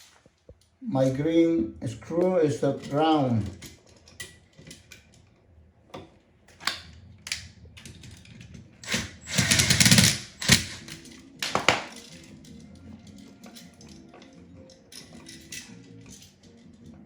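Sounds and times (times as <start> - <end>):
clicks of handling wires and tools: 10.4 - 17.0.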